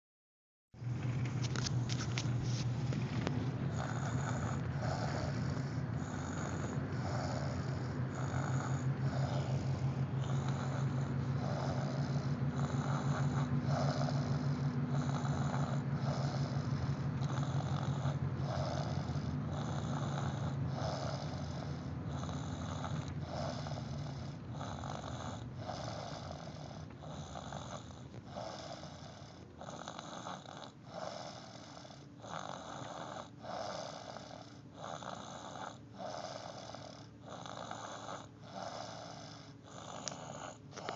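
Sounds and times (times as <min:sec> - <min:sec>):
low hum: 0:00.8 - 0:29.6
child snoring: 0:02.0 - 0:40.9.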